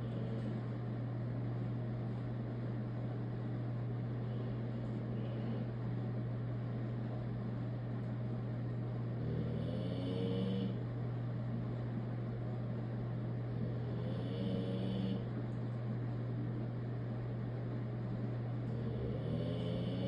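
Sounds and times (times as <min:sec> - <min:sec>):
steady low hum: 0:00.0 - 0:20.0
dog snoring loudly: 0:09.2 - 0:10.8, 0:13.5 - 0:15.3, 0:18.7 - 0:20.0.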